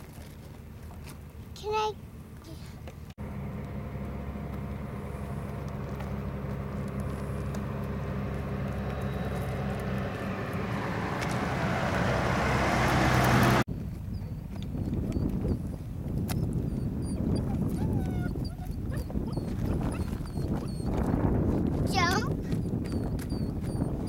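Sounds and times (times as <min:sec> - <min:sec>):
engine running: 0:00.0 - 0:14.7.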